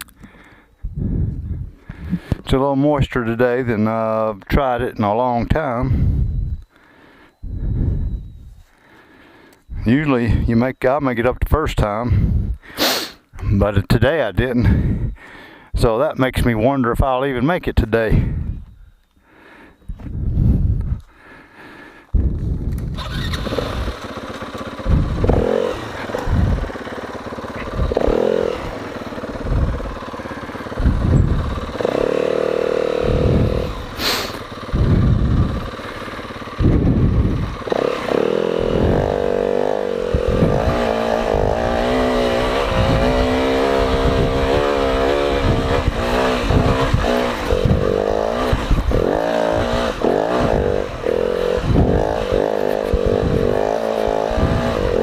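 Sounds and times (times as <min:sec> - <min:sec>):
off-road engine revving: 0:22.7 - 0:55.0.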